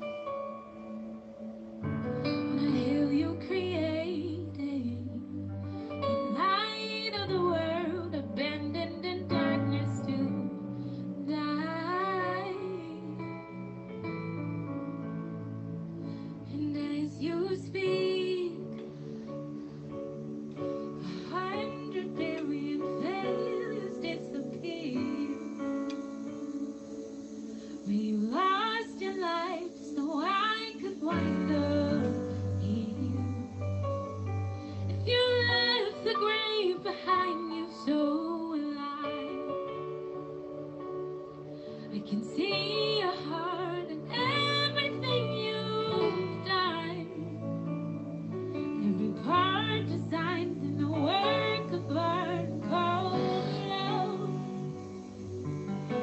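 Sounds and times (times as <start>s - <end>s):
woman singing worship song: 2.5s - 13.5s, 16.4s - 19.5s, 20.7s - 33.8s, 34.6s - 39.9s, 41.6s - 47.6s, 48.8s - 56.0s.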